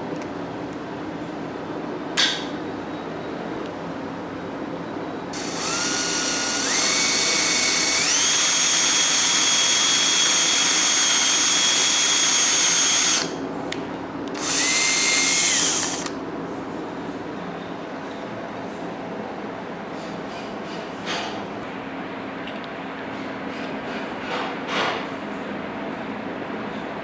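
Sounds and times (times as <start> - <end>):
power drill motor whining: 5.4 - 13.4, 14.3 - 16.2.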